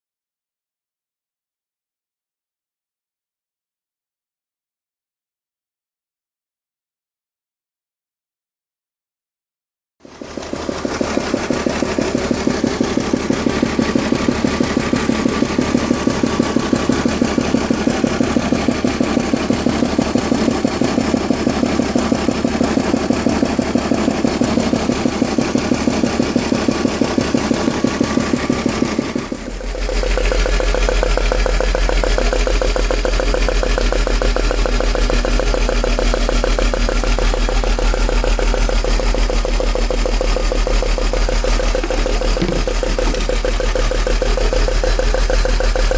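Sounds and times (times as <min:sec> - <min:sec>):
car engine idling with knocking: 0:10.1 - 0:45.9.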